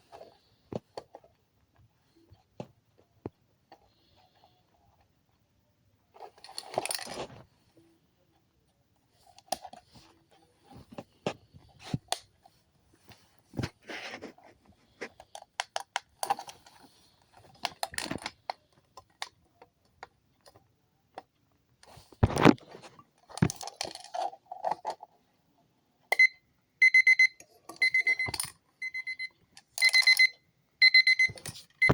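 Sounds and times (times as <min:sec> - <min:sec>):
clicks and handling noise: 0:00.0 - 0:05.4, 0:06.1 - 0:25.2, 0:27.4 - 0:30.4, 0:31.0 - 0:31.9
alarm clock beeping: 0:26.1 - 0:31.9.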